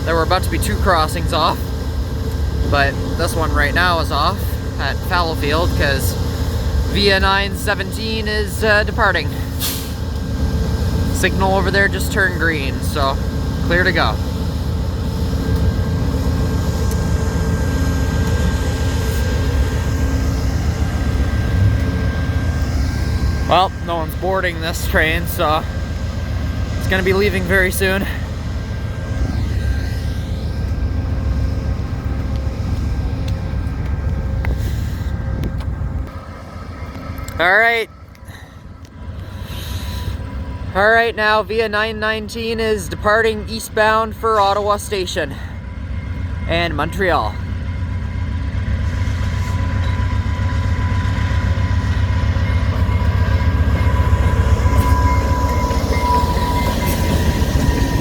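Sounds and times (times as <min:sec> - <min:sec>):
diesel locomotive idling: 0:00.0 - 0:58.0
thin steady whine: 0:00.0 - 0:58.0
train rumbling: 0:00.0 - 0:58.0.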